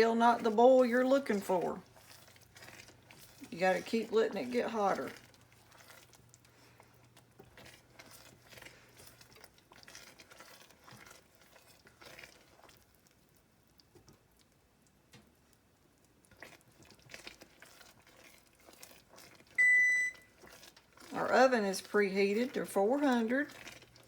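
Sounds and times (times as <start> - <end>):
butter simmering in saucepan: 0.0 - 24.0
electronic oven beep: 19.6 - 20.3.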